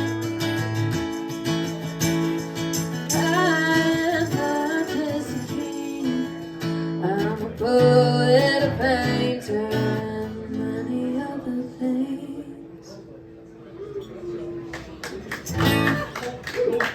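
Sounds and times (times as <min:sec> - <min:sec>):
acoustic guitar playing: 0:00.0 - 0:12.4, 0:15.4 - 0:16.2.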